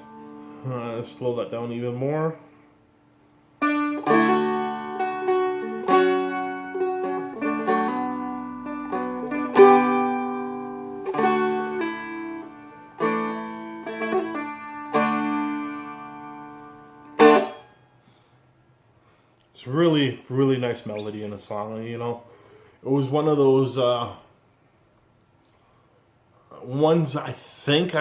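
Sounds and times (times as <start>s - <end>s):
strummed chords and picked notes: 3.6s - 17.7s.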